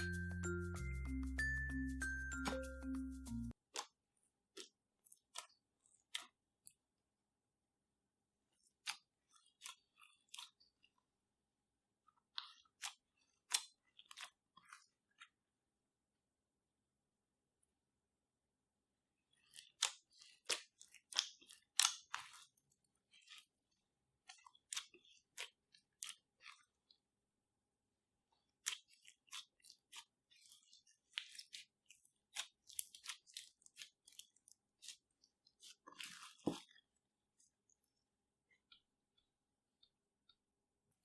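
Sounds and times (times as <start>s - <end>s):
slime squishing with pops: 19.7s - 22.6s.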